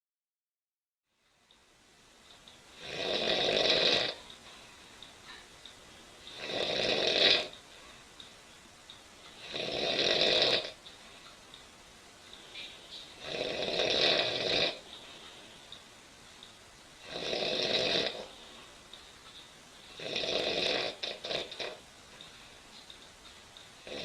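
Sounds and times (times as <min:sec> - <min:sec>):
woman snoring loudly: 0:02.7 - 0:04.2, 0:06.3 - 0:07.5, 0:09.4 - 0:10.8, 0:13.2 - 0:14.8, 0:17.0 - 0:18.4, 0:19.9 - 0:21.8.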